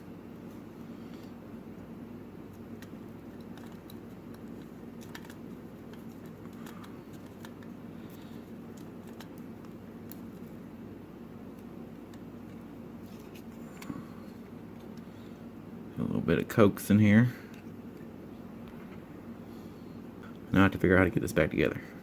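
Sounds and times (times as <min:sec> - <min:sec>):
steady low hum: 0:00.0 - 0:22.0
plastic parts clicking and scraping: 0:02.8 - 0:09.4.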